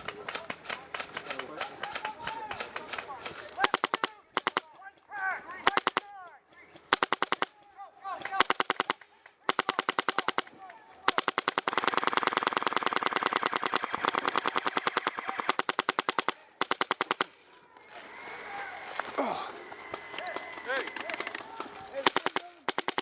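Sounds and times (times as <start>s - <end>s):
airsoft rifle firing full-auto: 0.3s - 4.6s, 5.6s - 6.1s, 6.9s - 7.5s, 8.3s - 17.4s, 20.4s - 23.0s.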